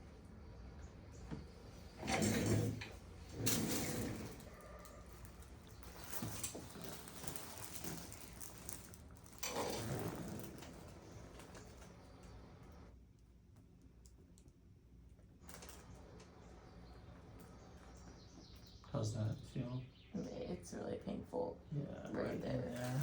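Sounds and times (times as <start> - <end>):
rustling of hands and clothing: 3.0 - 12.0.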